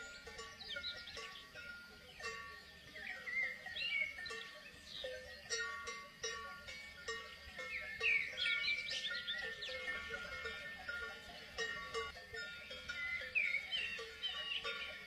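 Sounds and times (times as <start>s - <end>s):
birds chirping: 0.0s - 15.0s
livestock bells clanking: 0.0s - 15.0s.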